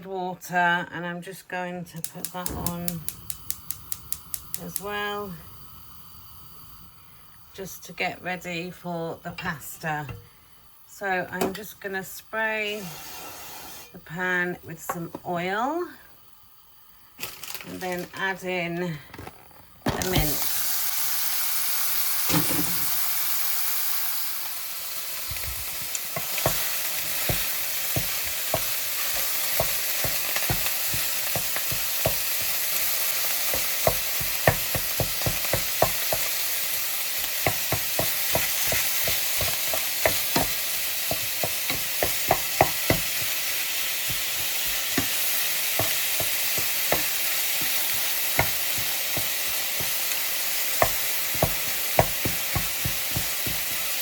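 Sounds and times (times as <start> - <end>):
meat sizzling in a pan: 2.0 - 54.0
utensil scraping a pan: 12.7 - 14.0.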